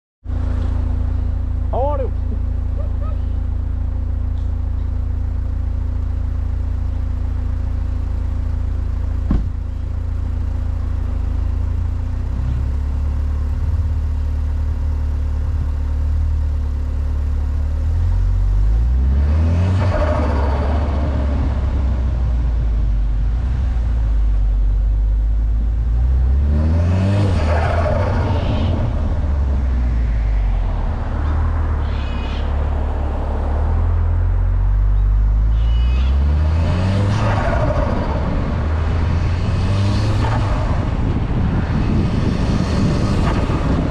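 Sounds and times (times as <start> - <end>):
car engine revving: 0.2 - 43.9.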